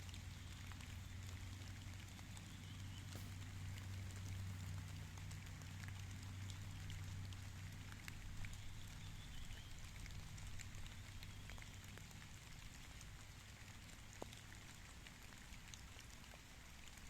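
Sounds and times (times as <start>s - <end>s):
steady low hum: 0.0s - 12.8s
raindrops ticking on leaves: 0.0s - 17.0s.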